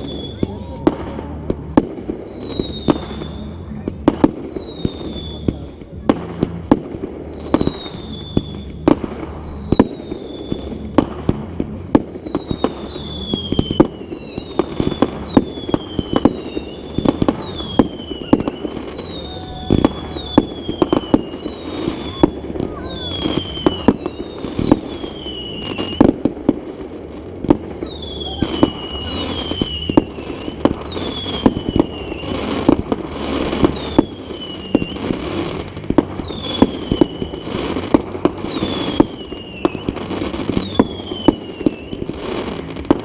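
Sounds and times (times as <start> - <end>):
fireworks bangs and bursts: 0.0 - 43.0
whistling firework shells: 0.0 - 43.0.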